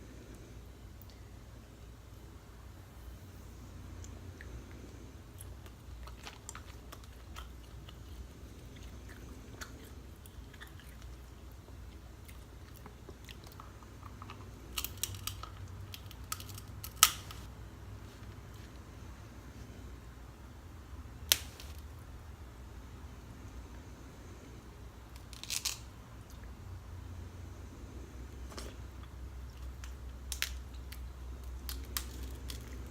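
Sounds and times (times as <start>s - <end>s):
chewing and biting: 5.4s - 17.1s
crab shell cracking: 13.3s - 17.4s, 25.1s - 25.9s, 29.6s - 32.9s.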